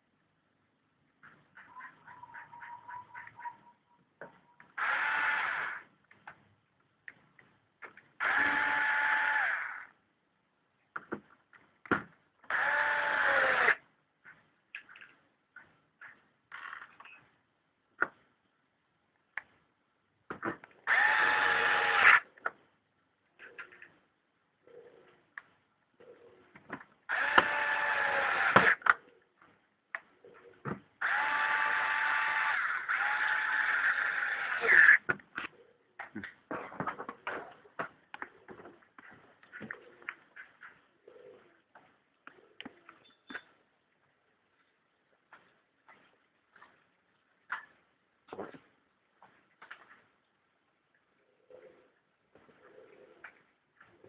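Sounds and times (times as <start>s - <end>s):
small electric tool running: 4.8s - 5.8s, 8.2s - 9.9s, 12.5s - 13.8s, 20.9s - 22.2s, 27.1s - 28.8s, 31.0s - 35.0s.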